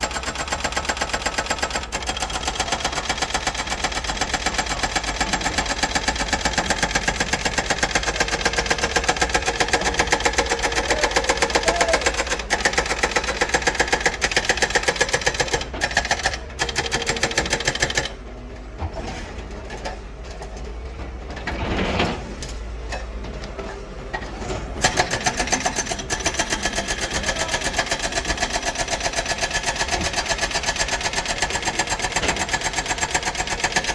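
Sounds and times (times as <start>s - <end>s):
excavator engine clattering: 0.0s - 18.2s, 18.8s - 33.9s.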